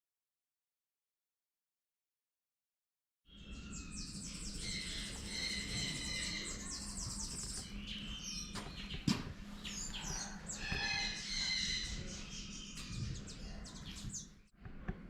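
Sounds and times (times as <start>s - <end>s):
small birds chirping: 3.3s - 14.5s.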